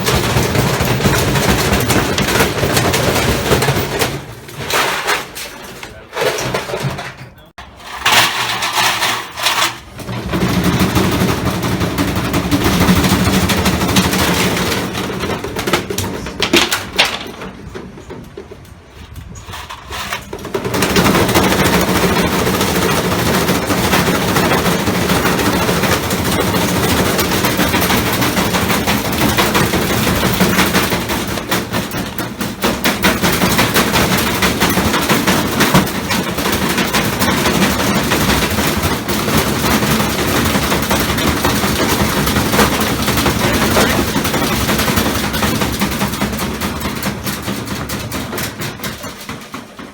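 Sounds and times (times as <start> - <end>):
washing machine motor hum: 0.0 - 4.4, 9.8 - 15.6, 20.7 - 49.9
load banging in washing machine: 0.0 - 18.9, 19.9 - 49.9.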